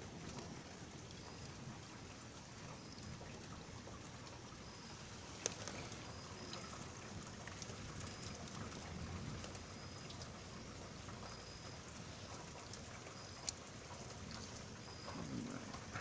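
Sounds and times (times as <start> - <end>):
steady rain hiss: 0.0 - 16.0.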